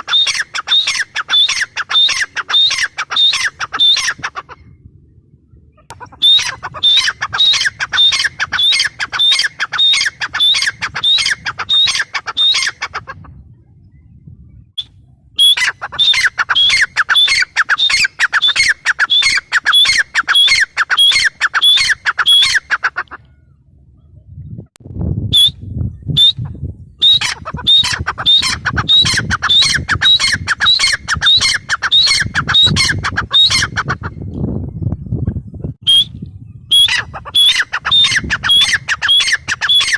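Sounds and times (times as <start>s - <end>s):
francolin calling: 0.0s - 4.6s, 5.9s - 13.0s, 15.4s - 22.8s, 36.7s - 39.9s.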